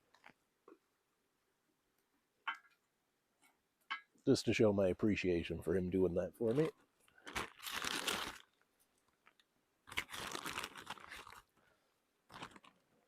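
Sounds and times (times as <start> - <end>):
paper filter crinkling: 6.5 - 11.6, 12.2 - 13.0.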